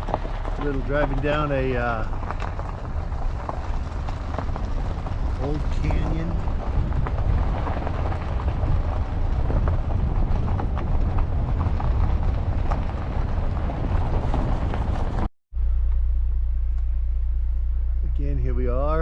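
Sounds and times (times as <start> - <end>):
vehicle road and wind noise: 0.0 - 19.0.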